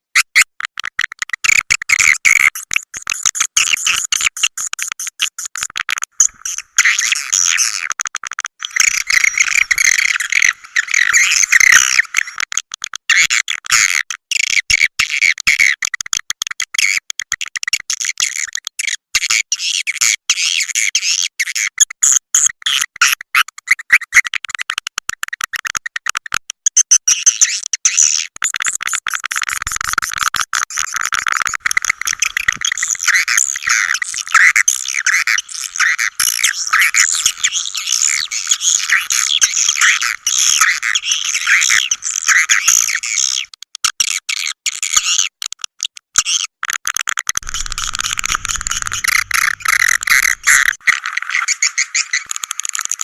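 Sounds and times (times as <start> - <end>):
swiftlets chattering and trilling: 8.6 - 12.2, 31.6 - 43.3, 47.4 - 50.8.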